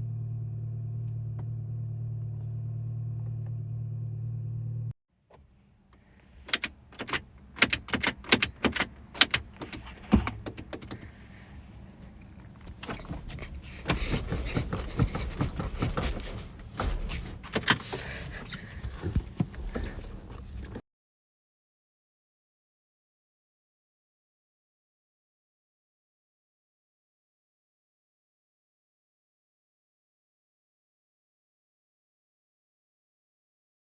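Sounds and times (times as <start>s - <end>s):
keys clicking and jangling: 6.5s - 11.1s, 12.6s - 19.0s.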